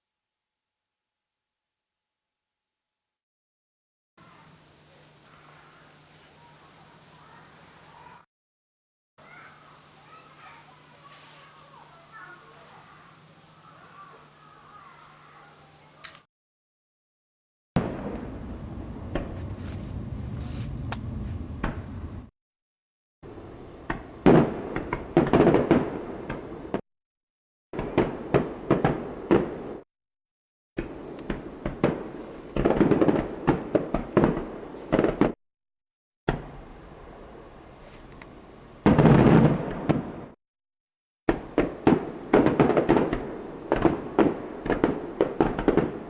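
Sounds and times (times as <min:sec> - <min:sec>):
fireworks bangs and crackles: 0:17.8 - 0:22.3, 0:23.3 - 0:26.8, 0:27.8 - 0:29.9, 0:30.8 - 0:35.4, 0:36.3 - 0:38.2, 0:38.8 - 0:40.4, 0:41.3 - 0:46.0.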